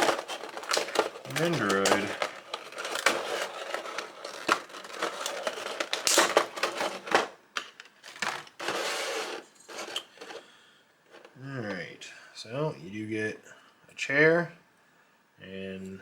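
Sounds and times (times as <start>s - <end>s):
plastic packaging crinkling: 0.0s - 10.5s.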